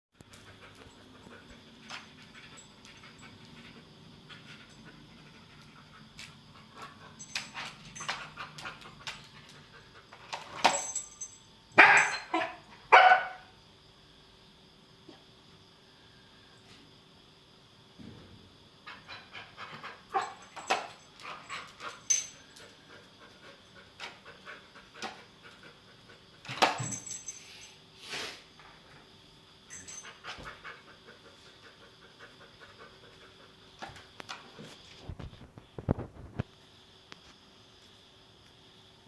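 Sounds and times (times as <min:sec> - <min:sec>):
dog panting: 0:30.1 - 0:33.8.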